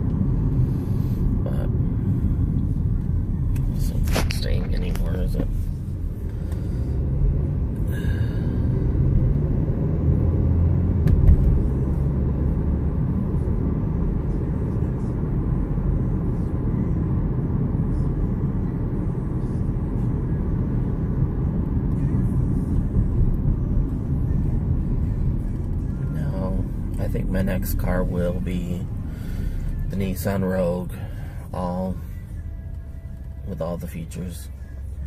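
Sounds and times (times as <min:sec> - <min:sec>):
road and engine rumble in car: 0:00.0 - 0:35.0
car bump: 0:11.0 - 0:11.6.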